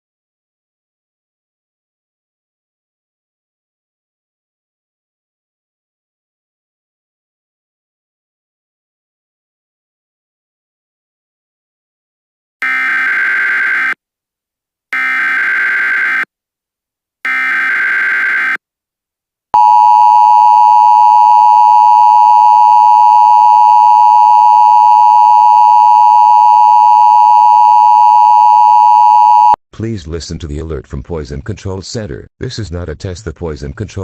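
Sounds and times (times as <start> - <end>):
two-tone attention signal: 19.6 - 29.6.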